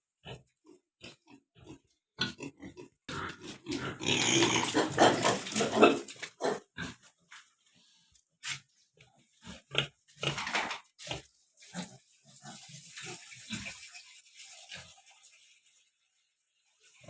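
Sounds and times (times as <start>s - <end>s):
pigs grunting: 0.3s - 7.1s
pigs squealing: 3.7s - 6.7s.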